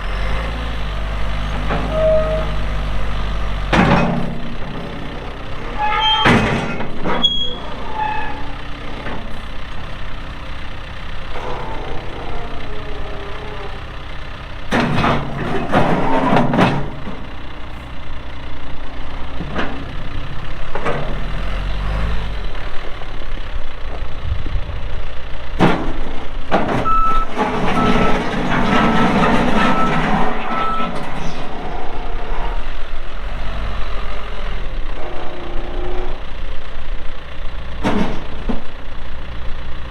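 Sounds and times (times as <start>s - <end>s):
diesel engine under hydraulic load: 0.0s - 39.9s
reversing alarm beeping: 26.8s - 28.3s, 29.7s - 30.9s.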